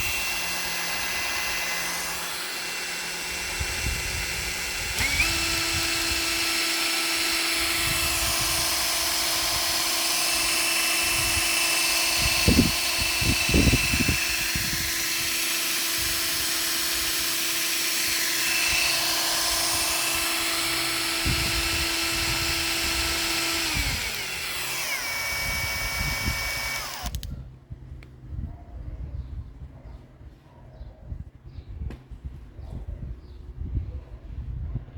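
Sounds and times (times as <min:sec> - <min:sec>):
cordless drill motor whine: 0:00.0 - 0:27.3.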